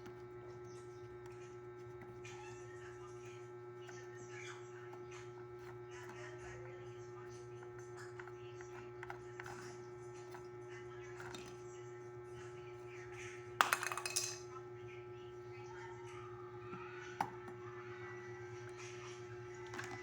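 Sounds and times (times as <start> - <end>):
steady low hum: 0.0 - 20.0
metal fan parts clinking: 13.6 - 14.4.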